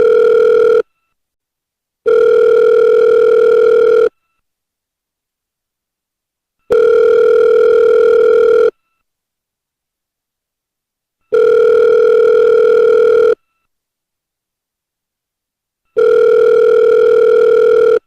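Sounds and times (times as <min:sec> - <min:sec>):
telephone ringback tone: 0:00.0 - 0:00.9, 0:02.1 - 0:04.2, 0:06.7 - 0:08.8, 0:11.3 - 0:13.4, 0:16.0 - 0:18.0.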